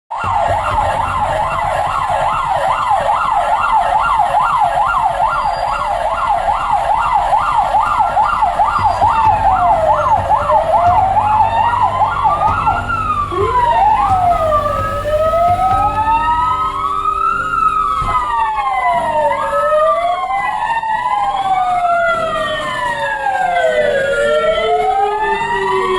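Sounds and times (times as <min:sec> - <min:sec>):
siren yelp: 0:00.1 - 0:25.9
sirens wailing: 0:00.1 - 0:25.9
low engine rumble: 0:00.2 - 0:20.0.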